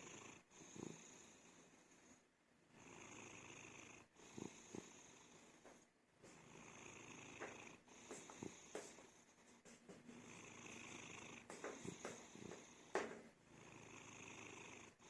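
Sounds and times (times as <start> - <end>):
cat snoring: 0.0 - 5.6, 6.4 - 9.0, 10.2 - 15.0
cat snorts: 4.2 - 5.2, 6.5 - 9.0.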